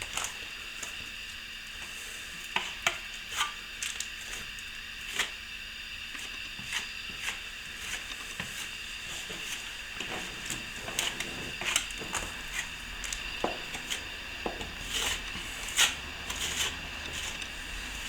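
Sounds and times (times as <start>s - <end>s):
trowel scraping plaster: 6.1s - 18.0s.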